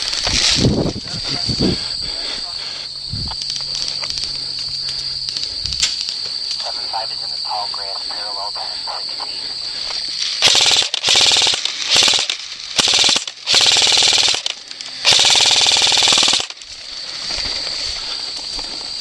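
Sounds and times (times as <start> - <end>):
airsoft gun bursts: 10.4 - 16.6.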